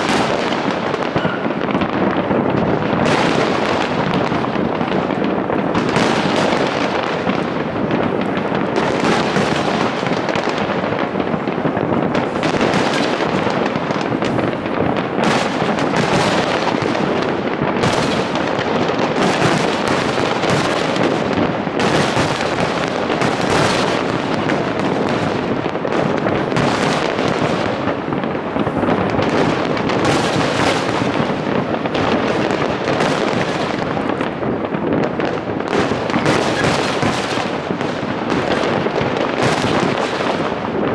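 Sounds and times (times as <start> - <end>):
fireworks shells bursting: 0.0 - 40.8.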